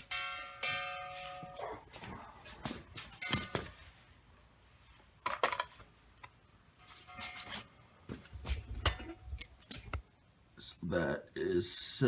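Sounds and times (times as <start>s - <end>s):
cylinder ringing like a bell: 0.0s - 1.8s.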